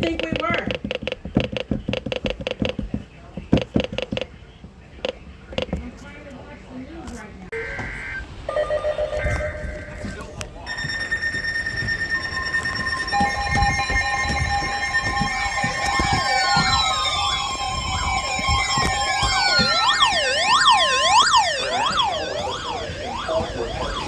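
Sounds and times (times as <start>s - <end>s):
electronic alert tones: 7.6s - 24.0s
electronic siren yelping: 7.6s - 24.0s.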